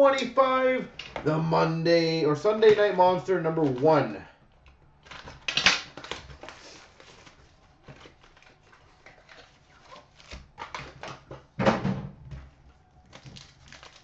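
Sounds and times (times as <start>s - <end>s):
wrappers and cards crinkling: 4.8s - 11.4s, 12.7s - 14.0s.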